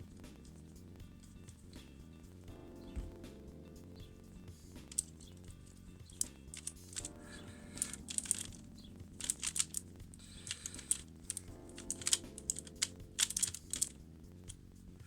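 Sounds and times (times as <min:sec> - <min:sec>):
plastic puzzle clicking: 0:04.9 - 0:05.5, 0:06.1 - 0:14.0.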